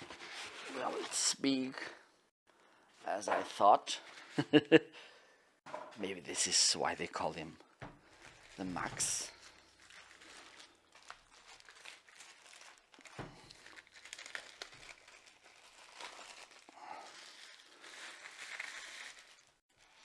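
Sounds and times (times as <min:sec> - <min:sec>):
packaging crinkling and rustling: 0:08.0 - 0:20.0.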